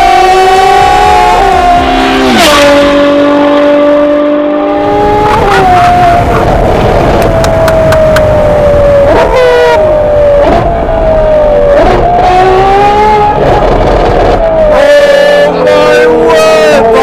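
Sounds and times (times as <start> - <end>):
loud car engine and exhaust: 0.0 - 17.0.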